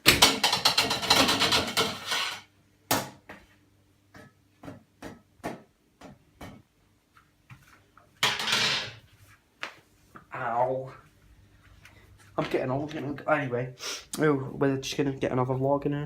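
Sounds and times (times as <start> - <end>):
rattling rustling noise: 0.2 - 2.5.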